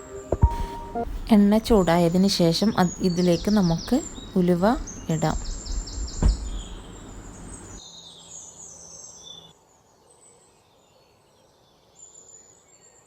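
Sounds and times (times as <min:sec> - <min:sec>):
steady hiss: 0:00.0 - 0:07.8
birds chirping: 0:00.4 - 0:07.8.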